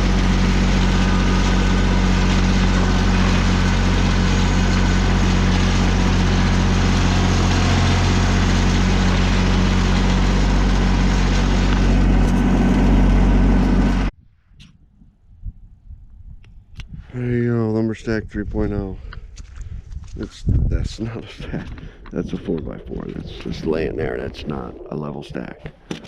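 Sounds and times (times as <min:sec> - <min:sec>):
engine running steadily: 0:00.0 - 0:14.2.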